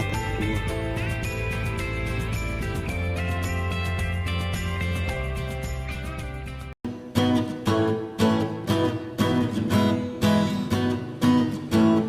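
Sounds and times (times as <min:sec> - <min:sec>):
acoustic guitar strumming: 0:00.0 - 0:02.9.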